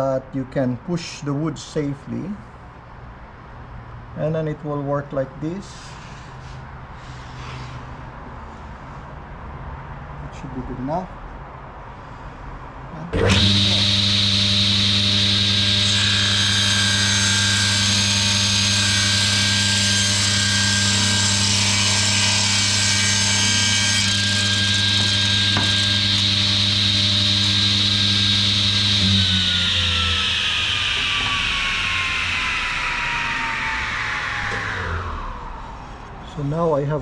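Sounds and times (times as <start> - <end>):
saw ripping a board: 13.2 - 33.8
saw blade winding down: 13.2 - 36.2
table saw running: 13.2 - 36.2.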